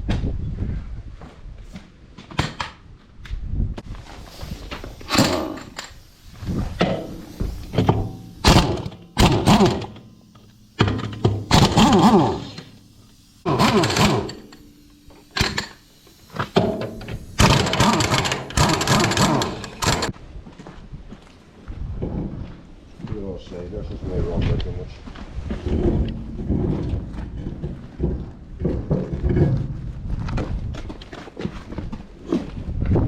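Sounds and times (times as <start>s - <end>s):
heavy metal thunks and knocks: 6.8s - 10.0s, 21.9s - 22.7s, 25.6s - 30.7s.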